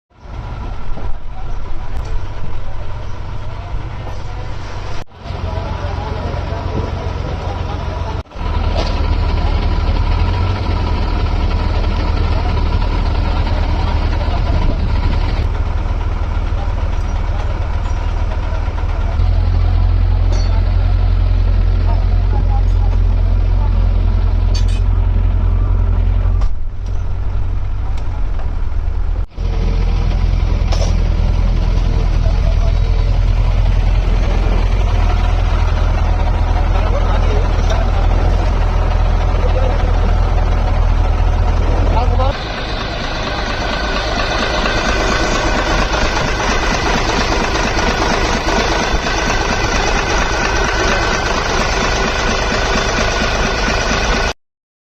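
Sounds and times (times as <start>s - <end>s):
diesel engine rumbling: 0.1s - 54.4s.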